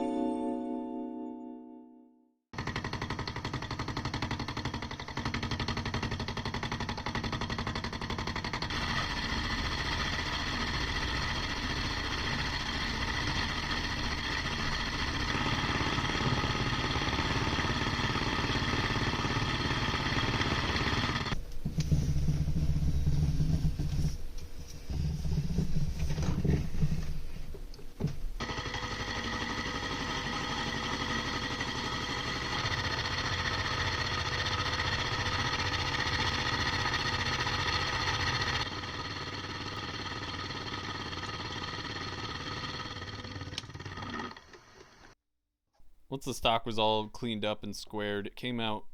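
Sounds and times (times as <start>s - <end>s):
machine tool motor whine: 8.4s - 21.4s, 28.4s - 45.1s.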